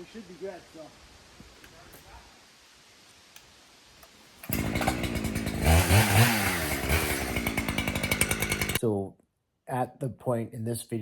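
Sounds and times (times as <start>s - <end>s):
chainsaw running at high revs: 4.4s - 8.8s.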